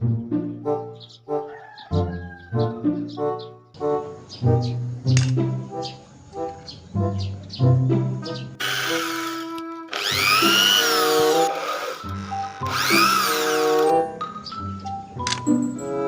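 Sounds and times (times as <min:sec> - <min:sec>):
background music: 0:00.0 - 0:16.0
electric drill whirring: 0:08.6 - 0:14.0.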